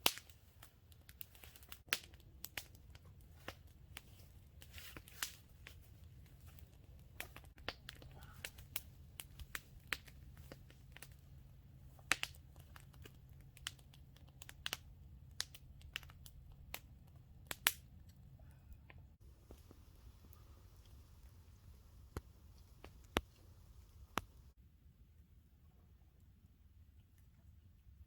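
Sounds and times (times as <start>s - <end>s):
sharp clicks and crackles: 0.0s - 18.3s, 18.9s - 24.5s
low steady rumble: 5.4s - 24.6s.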